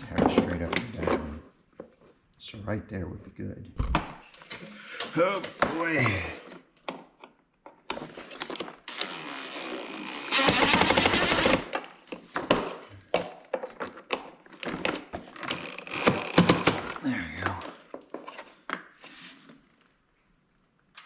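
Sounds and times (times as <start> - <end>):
cordless drill driving screw: 9.0 - 11.7
plastic parts clicking and knocking: 10.4 - 18.9.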